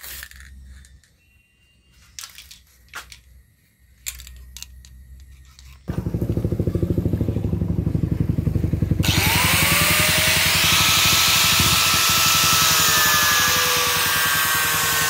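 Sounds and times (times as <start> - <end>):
grinder hissing and whining on steel: 9.0 - 15.0
power grinder running: 9.0 - 15.0.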